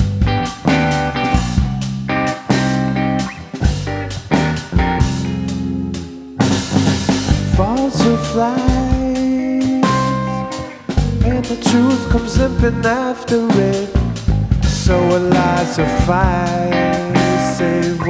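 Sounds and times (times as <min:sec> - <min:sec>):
sliding bending guitar notes: 0:00.0 - 0:08.9
rock band playing live: 0:00.0 - 0:18.0.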